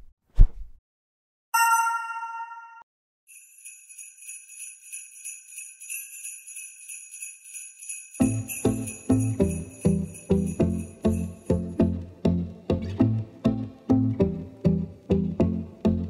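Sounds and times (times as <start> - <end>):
bell-like chime: 1.6 - 11.8
bells jingling: 3.3 - 11.8.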